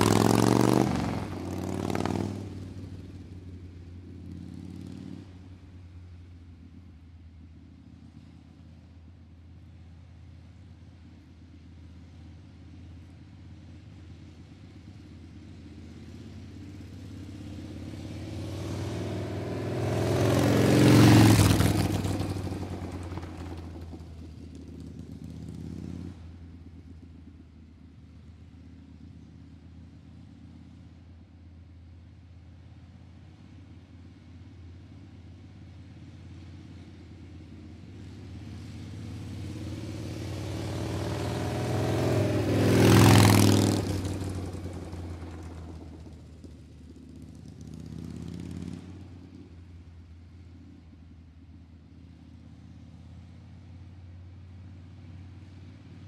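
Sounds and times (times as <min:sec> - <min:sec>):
vehicle passing by: 0:00.0 - 0:03.5, 0:16.6 - 0:26.2, 0:37.9 - 0:49.4
vehicle approaching: 0:00.0 - 0:08.4, 0:14.0 - 0:29.3, 0:35.8 - 0:51.1
low engine hum: 0:00.0 - 0:56.0.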